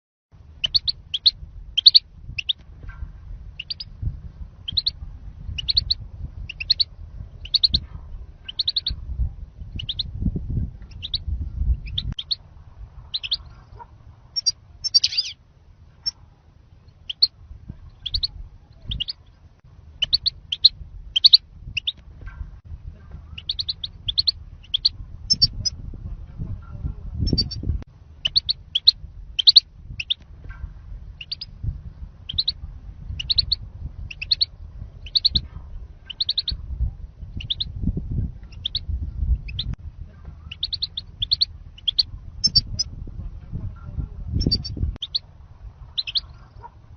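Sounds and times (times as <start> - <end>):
low rumble: 0.3 - 46.9
goldfinch twittering calls: 0.6 - 2.6, 4.7 - 5.0, 5.6 - 7.8, 8.5 - 8.9, 9.8 - 10.1, 10.9 - 11.2, 13.1 - 13.5, 14.4 - 15.4, 20.0 - 22.0, 23.4 - 25.7, 28.2 - 30.2, 31.2 - 31.5, 32.3 - 35.4, 36.1 - 36.6, 37.4 - 37.7, 38.5 - 38.8, 40.5 - 42.9, 44.4 - 45.2, 46.0 - 46.7.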